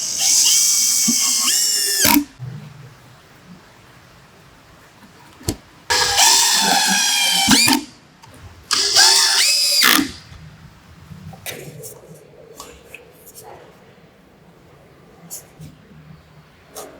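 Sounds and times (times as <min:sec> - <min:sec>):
power tool motor whining: 0:05.9 - 0:07.8, 0:08.7 - 0:10.2.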